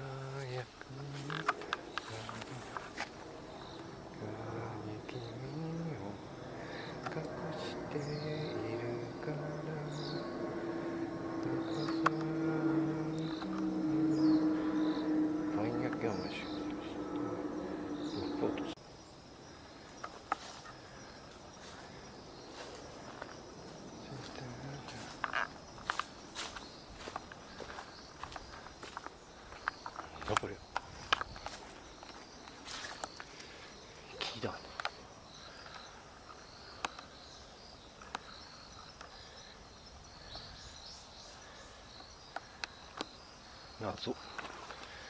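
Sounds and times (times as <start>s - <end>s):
low humming tone: 0.0s - 18.8s
insects calling: 0.0s - 45.0s.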